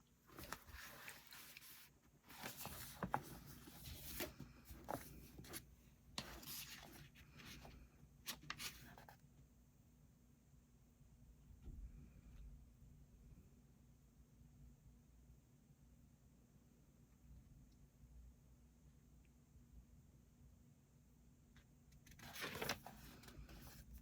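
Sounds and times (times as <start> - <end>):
paper rustling and scraping: 0.3 - 9.2, 22.1 - 24.0.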